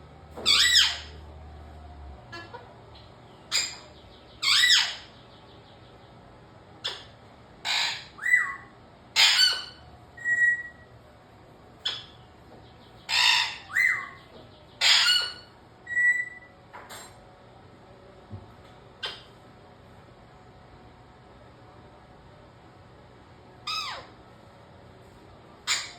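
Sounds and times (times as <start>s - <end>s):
pet bird squawking and whistling: 0.4s - 1.2s, 3.5s - 5.2s, 6.8s - 10.9s, 11.8s - 12.2s, 13.1s - 16.5s, 23.6s - 24.2s, 25.6s - 25.9s.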